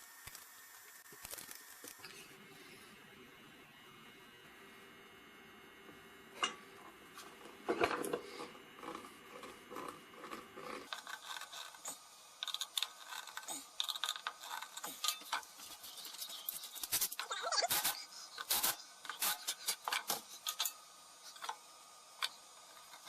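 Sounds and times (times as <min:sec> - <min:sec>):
scraping and rubbing: 0:07.9 - 0:20.7.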